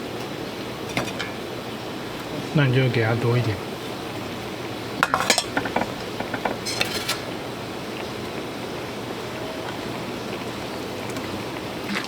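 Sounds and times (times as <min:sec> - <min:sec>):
steady hiss: 0:00.0 - 0:12.0
utensils clinking: 0:00.8 - 0:01.6, 0:05.0 - 0:07.5
scraping rustle: 0:05.2 - 0:07.4.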